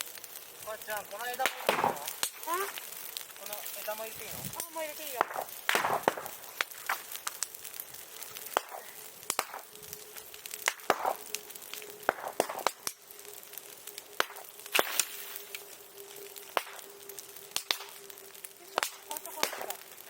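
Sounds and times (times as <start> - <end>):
bonfire crackling and popping: 0.0 - 20.0.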